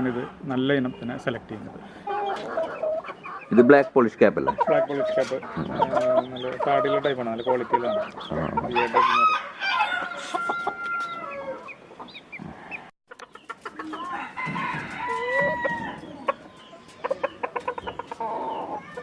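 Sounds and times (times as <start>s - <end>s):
chickens clucking: 0.0s - 19.0s
rooster crowing: 8.8s - 11.7s, 14.0s - 16.2s.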